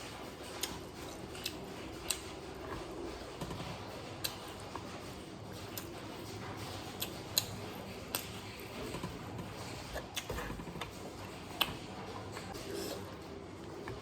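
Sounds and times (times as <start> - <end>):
chewing and mouth noises: 9.9 - 13.1.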